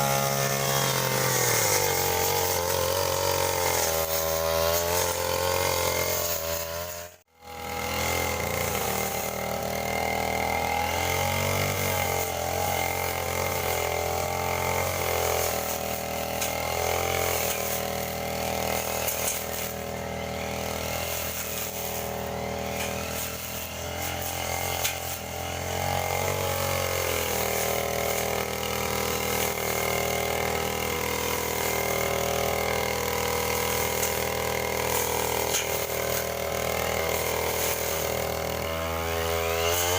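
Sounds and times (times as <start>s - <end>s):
brush cutter engine cutting grass: 0.0s - 39.9s.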